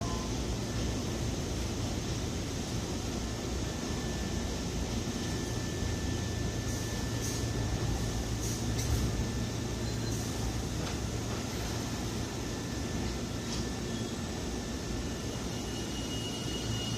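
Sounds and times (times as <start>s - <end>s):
train humming: 0.0s - 16.9s
faint high whine: 3.0s - 16.9s.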